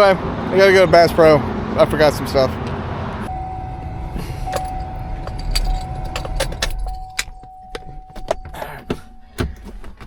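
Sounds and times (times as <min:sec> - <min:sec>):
car engine low rumble: 0:00.0 - 0:10.0
high electronic warning tone: 0:03.3 - 0:09.4
keys jangling and clicking: 0:04.5 - 0:08.9.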